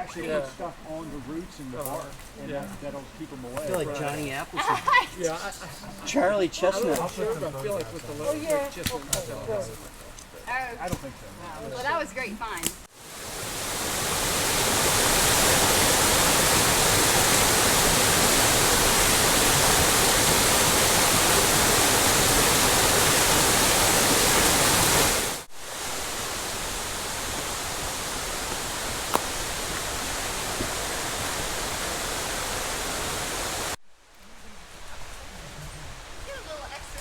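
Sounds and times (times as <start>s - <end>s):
flowing water rushing: 12.9s - 33.8s.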